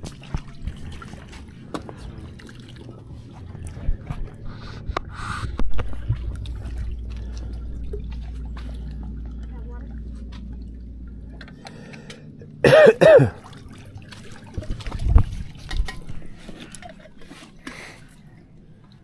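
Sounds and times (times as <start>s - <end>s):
person coughing: 12.6s - 13.4s.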